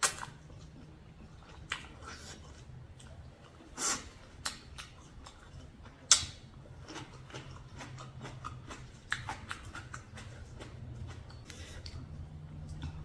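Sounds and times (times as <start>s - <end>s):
chewing with sharp clicks: 4.4s - 13.0s.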